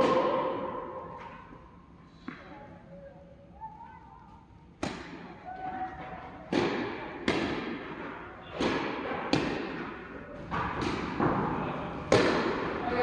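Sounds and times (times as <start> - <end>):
tennis ball hit by rackets: 6.5 - 12.8.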